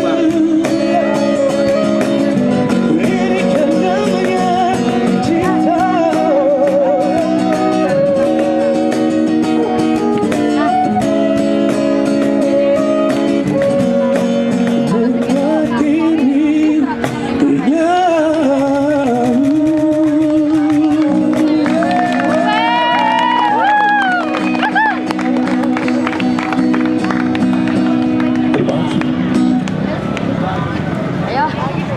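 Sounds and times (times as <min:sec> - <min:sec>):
person singing with vibrato: 0:00.0 - 0:11.0
strummed acoustic guitar: 0:00.0 - 0:30.0.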